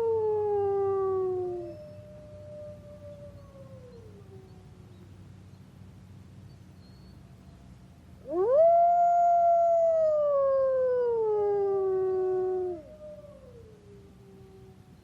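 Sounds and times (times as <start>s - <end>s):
wolf howling: 8.3s - 14.7s.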